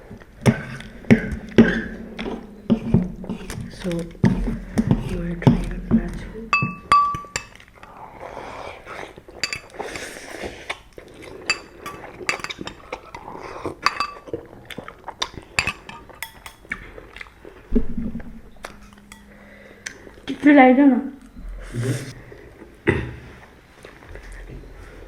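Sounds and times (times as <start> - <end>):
utensils clinking against bowls: 0.5 - 7.7, 9.4 - 9.9, 11.4 - 14.5, 15.2 - 17.4, 18.5 - 20.4.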